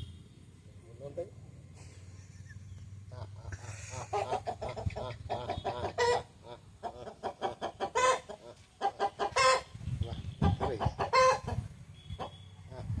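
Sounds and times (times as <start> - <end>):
chicken calls: 1.9 - 9.8, 10.4 - 12.9
chickens clucking: 1.9 - 13.0.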